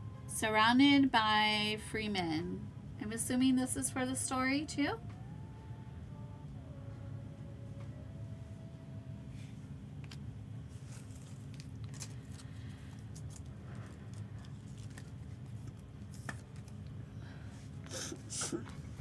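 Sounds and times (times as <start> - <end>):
steady low hum: 0.0 - 19.0
trading cards rustling and clicking: 10.8 - 16.9.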